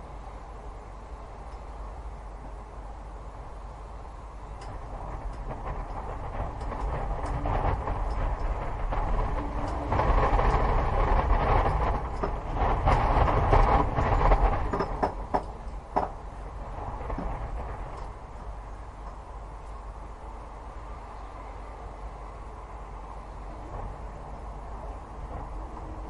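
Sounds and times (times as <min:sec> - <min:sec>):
low rumble: 0:00.0 - 0:26.0
dense rattle of clicks: 0:04.6 - 0:16.2.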